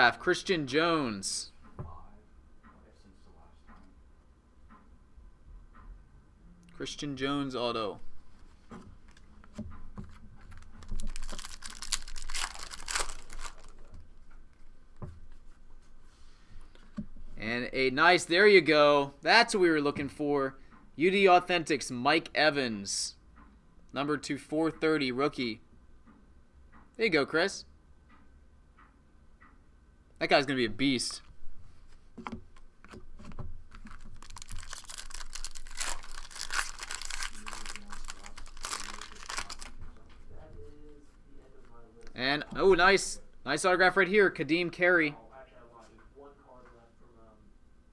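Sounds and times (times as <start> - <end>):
trading cards clicking and rustling: 8.7 - 14.7, 32.2 - 39.8
foil wrappers tearing and crinkling: 10.4 - 13.9, 33.7 - 39.8.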